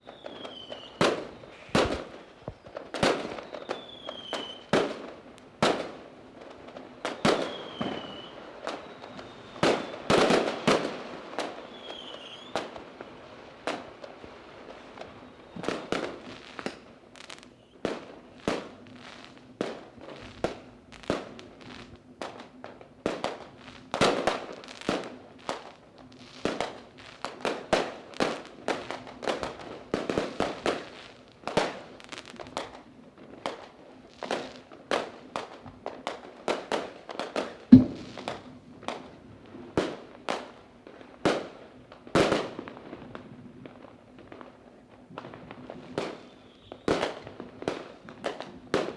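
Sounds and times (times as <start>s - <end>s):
falling whistles: 0.0s - 4.7s, 7.2s - 10.1s, 11.6s - 12.6s
fireworks banging: 0.0s - 6.1s, 34.2s - 39.1s.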